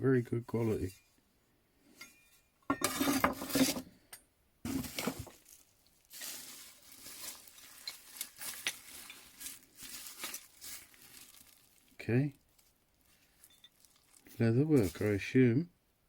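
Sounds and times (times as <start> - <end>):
metal tools clattering in a box: 13.4 - 13.9.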